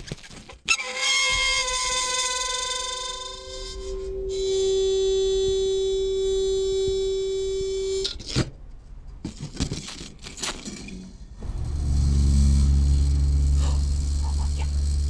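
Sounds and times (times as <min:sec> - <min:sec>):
low buzz: 0:11.4 - 0:15.0
metal singing on dry ice: 0:11.4 - 0:15.0.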